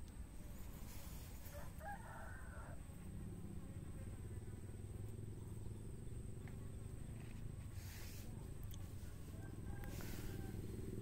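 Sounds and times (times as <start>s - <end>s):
rooster crowing: 1.4s - 2.9s, 8.9s - 11.0s
steady low rumble: 2.9s - 11.0s.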